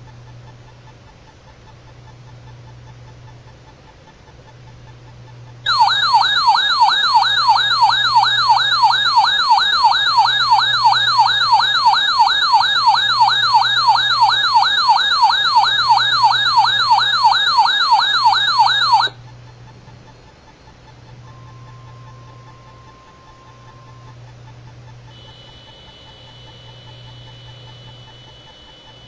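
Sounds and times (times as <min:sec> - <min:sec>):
warbling electronic alert tone: 0:05.7 - 0:19.2.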